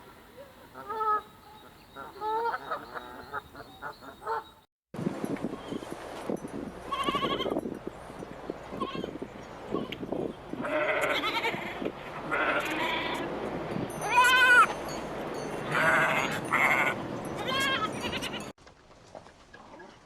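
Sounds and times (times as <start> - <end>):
livestock bleating: 10.6 - 13.3, 15.7 - 18.5.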